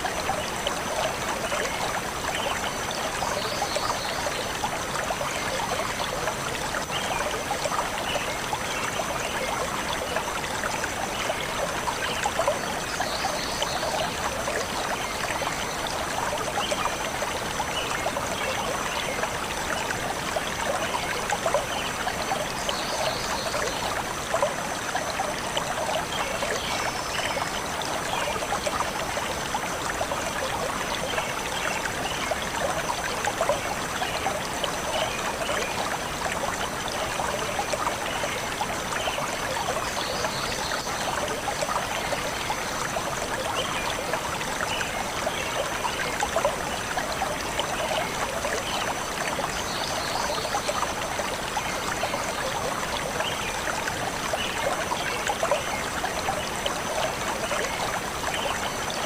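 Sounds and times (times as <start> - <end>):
stream water flowing: 0.0 - 59.0.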